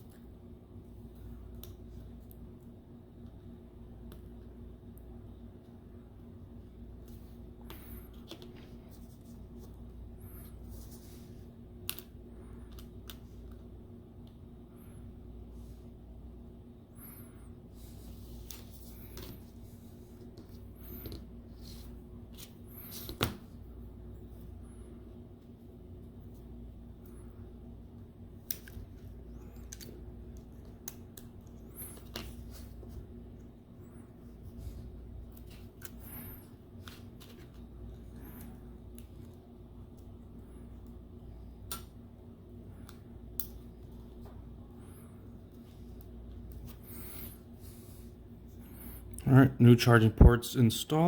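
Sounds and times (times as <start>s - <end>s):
low steady hum: 0.0s - 51.0s.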